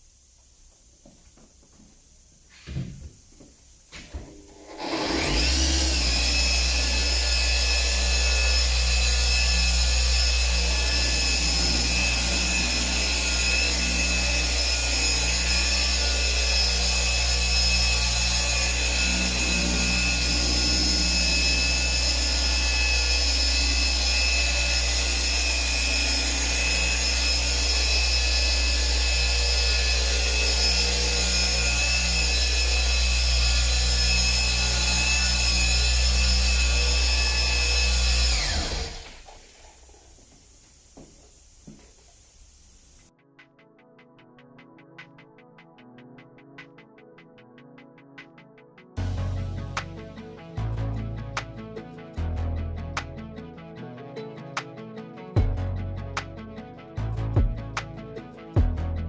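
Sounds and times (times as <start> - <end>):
electric polisher whining: 4.0 - 41.9.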